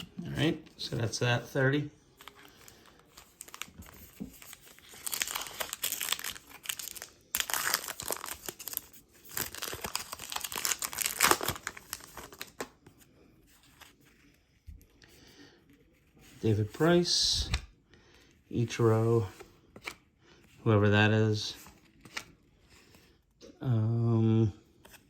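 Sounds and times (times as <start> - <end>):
wrapper tearing and crinkling: 2.2 - 12.7.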